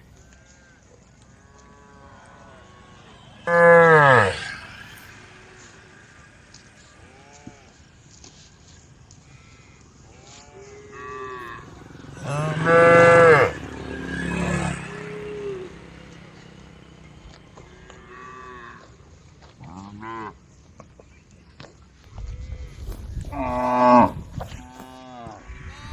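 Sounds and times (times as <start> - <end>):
cows mooing: 1.3 - 8.1, 9.4 - 20.4, 23.3 - 25.9.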